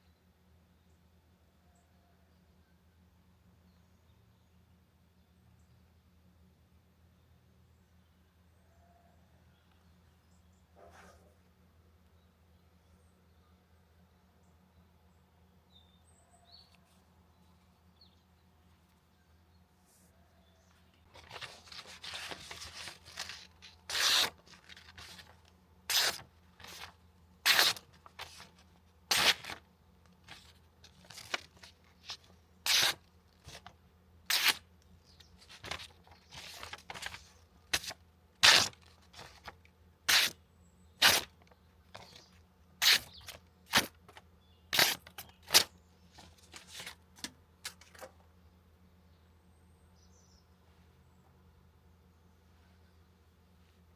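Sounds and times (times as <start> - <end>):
knife cutting strokes: 21.7 - 25.3, 25.9 - 26.9, 27.5 - 28.5, 29.1 - 29.6, 31.1 - 33.6, 34.3 - 34.6, 37.8 - 39.5, 40.1 - 40.4, 41.0 - 41.3, 42.8 - 44.0, 44.8 - 45.7.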